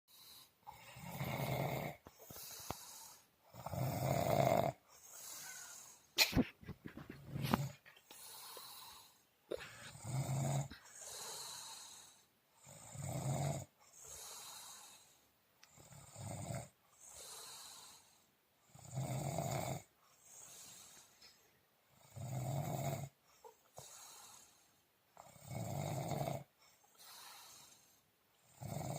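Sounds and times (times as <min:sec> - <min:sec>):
loud buzzing snore: 0:00.1 - 0:05.9, 0:08.4 - 0:15.1, 0:15.7 - 0:18.1, 0:18.7 - 0:21.0, 0:22.0 - 0:23.2, 0:25.2 - 0:28.9
sharp snorts: 0:00.2 - 0:12.2
soft breathing: 0:02.0 - 0:03.5, 0:04.8 - 0:12.7, 0:20.0 - 0:21.7, 0:26.5 - 0:28.2.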